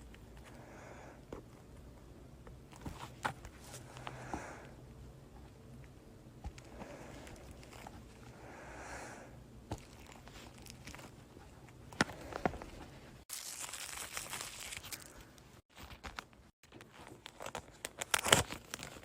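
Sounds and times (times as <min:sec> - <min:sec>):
soft rustling: 0:01.3 - 0:04.5, 0:09.7 - 0:13.3.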